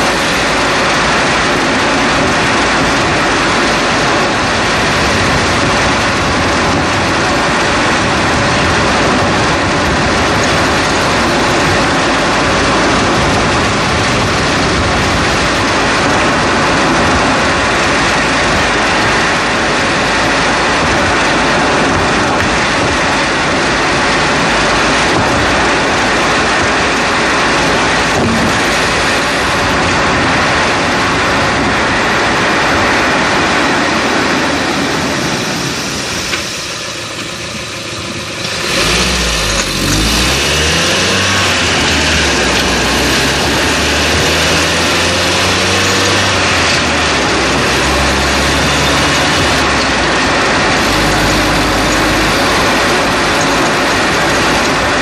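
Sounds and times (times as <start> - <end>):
car engine revving: 0.0 - 55.0
road and tyre noise: 0.0 - 55.0.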